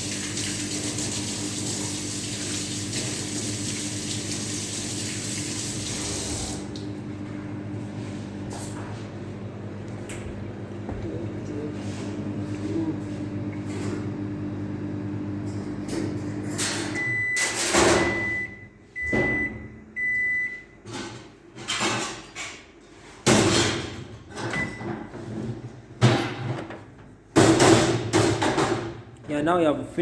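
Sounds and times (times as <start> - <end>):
microwave beeping: 0.0 - 7.8, 13.3 - 20.9, 24.4 - 25.1
microwave oven humming: 0.0 - 21.4.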